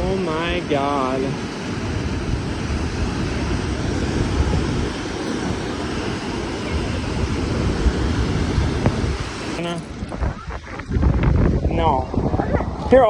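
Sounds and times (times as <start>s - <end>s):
waterfall rushing: 0.0s - 11.5s.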